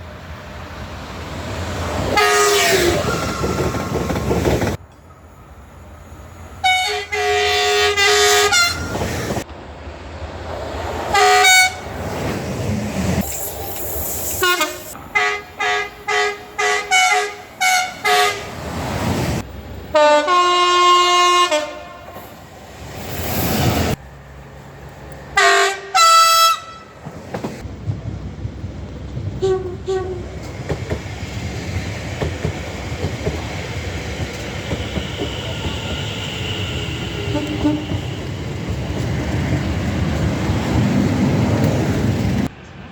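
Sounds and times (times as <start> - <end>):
passing trains rumbling: 0.0 - 42.9
train horn blasts: 2.2 - 2.9, 6.6 - 9.0, 11.1 - 11.9, 14.4 - 18.6, 19.9 - 22.2, 25.4 - 27.0, 29.4 - 30.3, 35.0 - 38.3.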